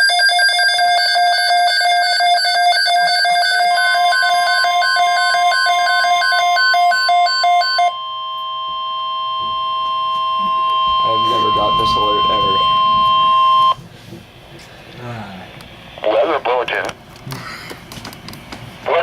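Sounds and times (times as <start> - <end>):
rapid electronic alarm beeping: 0.0 - 13.8
steady alert tone: 10.3 - 13.8.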